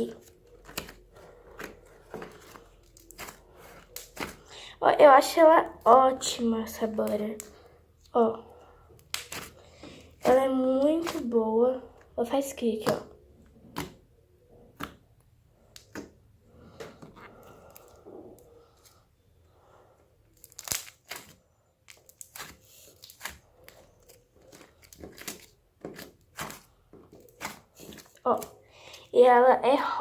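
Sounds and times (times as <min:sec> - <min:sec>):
slime clicking and popping: 0:09.0 - 0:09.6, 0:20.4 - 0:23.4.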